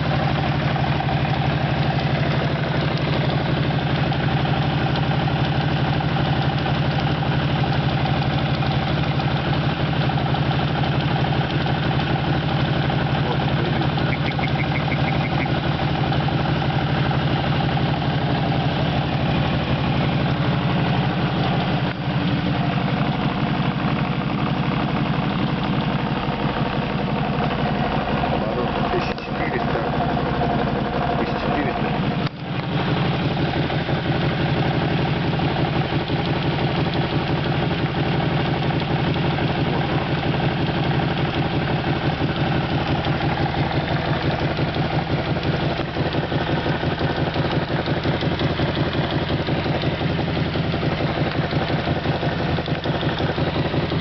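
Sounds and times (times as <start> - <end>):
engine idling: 0.0 - 54.0
fast light ticks: 42.6 - 54.0.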